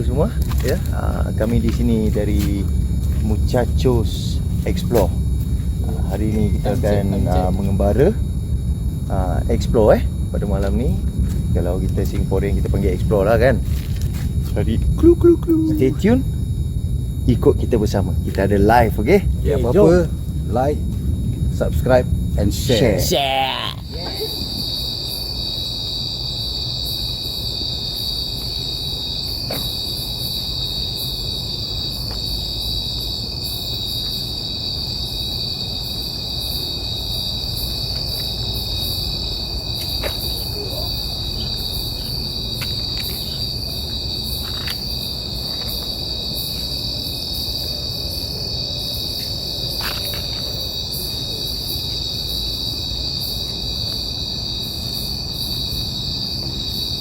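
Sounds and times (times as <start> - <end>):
low steady rumble: 0.0 - 23.2
night insects trilling: 0.0 - 57.0.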